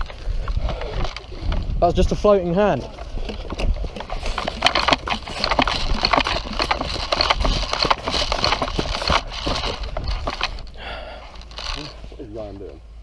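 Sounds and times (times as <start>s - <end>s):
wind on microphone: 0.0s - 10.7s
footsteps on rough ground: 0.0s - 12.7s
gear knocking and rattling: 0.0s - 12.8s.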